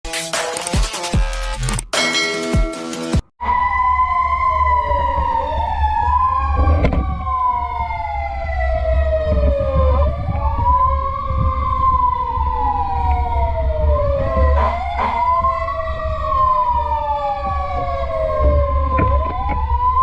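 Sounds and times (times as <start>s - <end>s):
fire truck sirens wailing: 3.4s - 20.0s.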